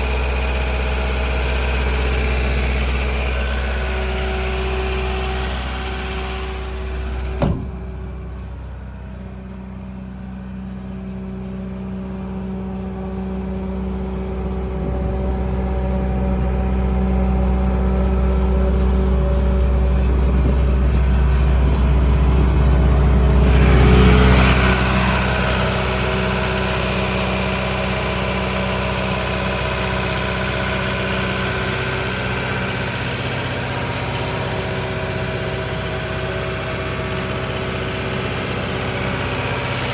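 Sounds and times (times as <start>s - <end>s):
diesel compressor engine running: 0.0s - 39.9s.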